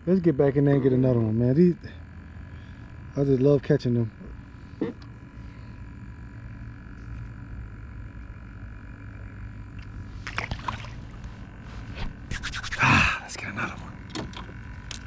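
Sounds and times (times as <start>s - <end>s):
faint steady tones: 0.0s - 10.2s
low mechanical hum: 0.0s - 15.0s.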